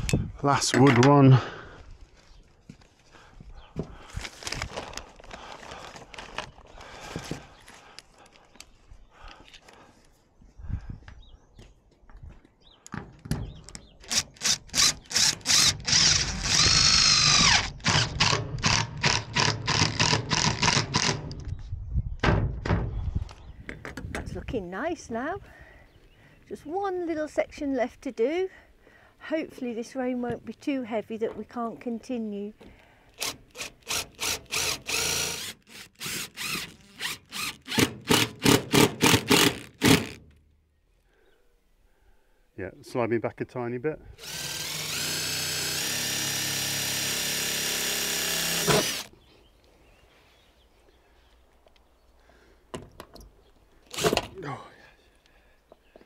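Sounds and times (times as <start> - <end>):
power drill bursts on wood: 14.1 - 21.2, 33.2 - 40.2, 44.2 - 49.1, 53.9 - 54.3
hand saw cutting wood: 33.2 - 40.2, 44.2 - 49.1.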